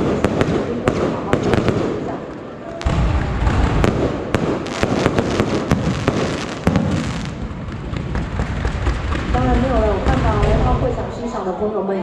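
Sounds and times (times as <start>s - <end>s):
fireworks bangs and crackles: 0.0s - 11.2s
low rumble: 2.8s - 4.4s.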